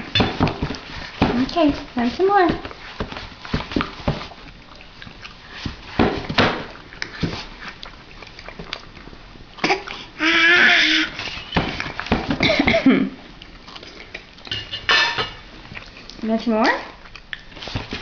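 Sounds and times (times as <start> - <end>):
baby breathy sounds: 9.6 - 11.5
baby squealing: 10.2 - 11.5.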